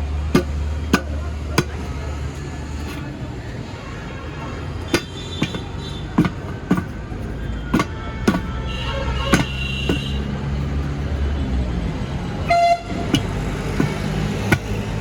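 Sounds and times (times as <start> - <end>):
sharp knocks: 0.2 - 2.1, 4.8 - 11.2, 12.8 - 15.0
vehicle horns honking: 0.4 - 15.0.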